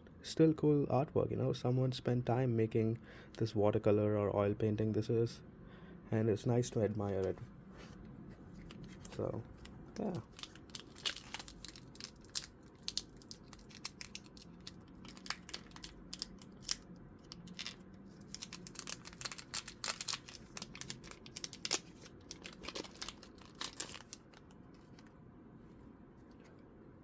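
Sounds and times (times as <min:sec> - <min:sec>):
foil wrapper crinkling and tearing: 0:10.0 - 0:25.0.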